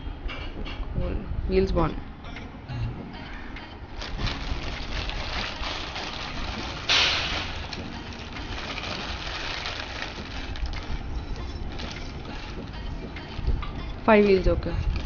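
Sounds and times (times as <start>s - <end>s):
plastic packaging crinkling: 4.0s - 15.0s
loud plastic rip: 4.1s - 10.7s.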